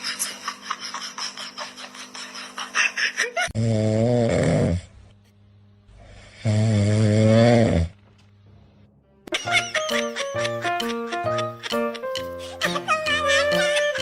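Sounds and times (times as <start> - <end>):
pet snoring: 3.6 - 5.0, 6.0 - 8.0.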